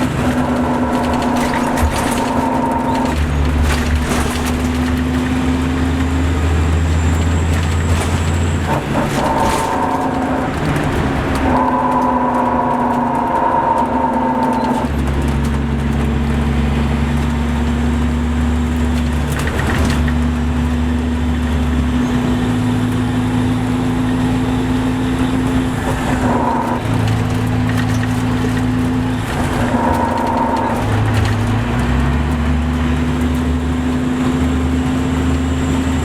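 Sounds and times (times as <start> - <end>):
diesel bus engine running: 0.0 - 36.0.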